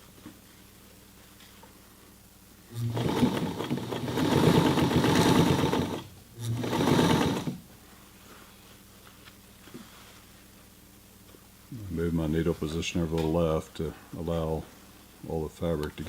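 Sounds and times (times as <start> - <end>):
sewing machine motor hum: 2.7 - 7.7.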